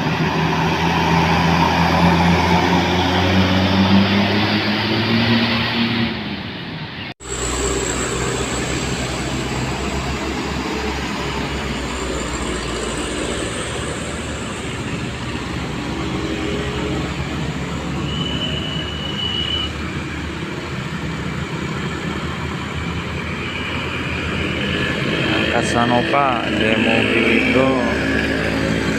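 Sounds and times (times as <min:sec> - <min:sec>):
high-pitched squeal: 0:00.0 - 0:20.0
heavy vehicle engine and road rumble: 0:00.0 - 0:28.9.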